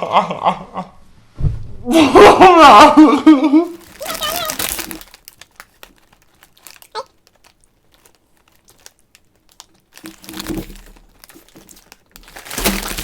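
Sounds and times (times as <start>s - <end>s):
snack packaging crinkling: 3.6s - 13.0s.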